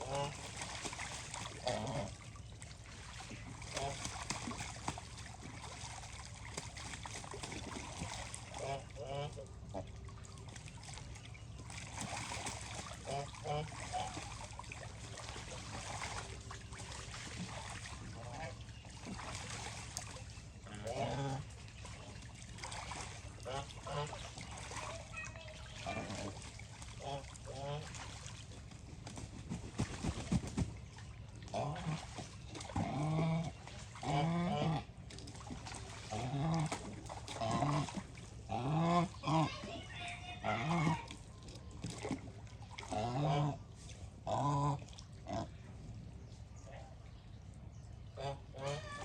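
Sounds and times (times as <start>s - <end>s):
water trickling and splashing: 0.0s - 49.0s.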